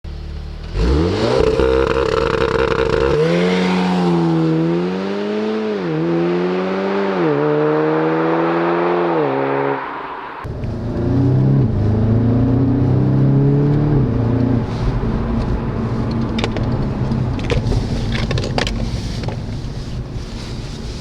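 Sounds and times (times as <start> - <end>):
car engine revving: 0.2 - 19.0.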